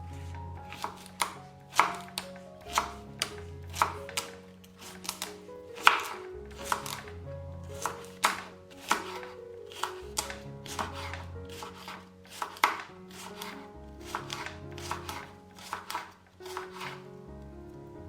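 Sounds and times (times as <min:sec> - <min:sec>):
background music: 0:00.0 - 0:18.0
knife chopping on cutting board: 0:00.7 - 0:03.0, 0:07.8 - 0:17.0.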